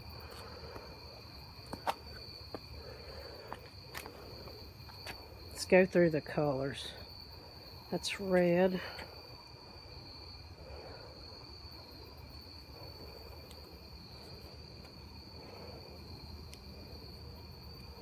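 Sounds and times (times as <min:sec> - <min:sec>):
crickets chirping: 0:00.0 - 0:18.0
faint ticks: 0:13.4 - 0:13.7, 0:16.4 - 0:16.7.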